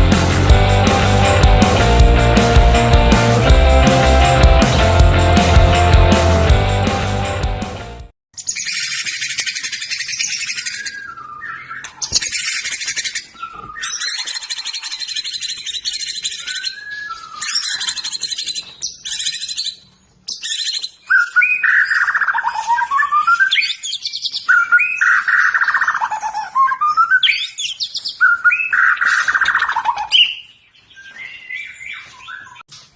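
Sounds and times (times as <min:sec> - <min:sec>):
bird singing harsh trills: 0:08.4 - 0:32.6.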